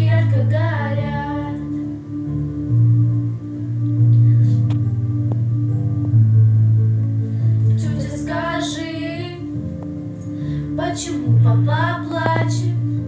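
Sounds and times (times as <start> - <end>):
low accompaniment notes: 0.0 - 13.0.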